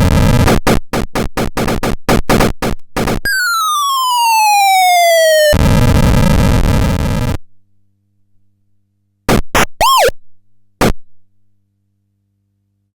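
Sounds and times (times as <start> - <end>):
harsh electronic buzz: 0.0 - 4.1
short electronic blips: 9.3 - 10.2.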